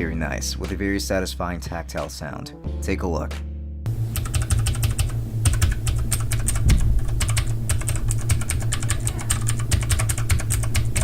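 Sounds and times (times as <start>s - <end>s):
steady low hum: 3.9s - 11.0s
clicky mechanical keyboard typing: 4.2s - 11.0s.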